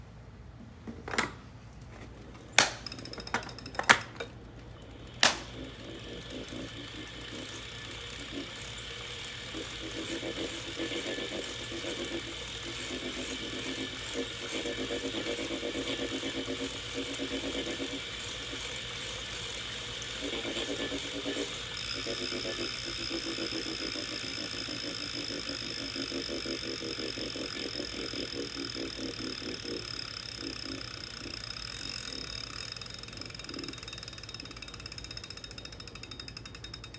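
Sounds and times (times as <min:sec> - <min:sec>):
bike trainer whirring: 0:00.8 - 0:36.9
sharp clicks: 0:02.3 - 0:08.8
rhythmic pulsing noise: 0:04.8 - 0:36.9.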